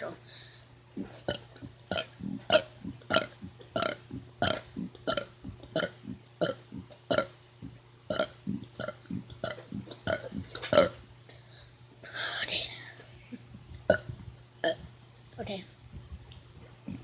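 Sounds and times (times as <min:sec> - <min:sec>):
man burping: 0:01.0 - 0:07.3, 0:08.1 - 0:11.0.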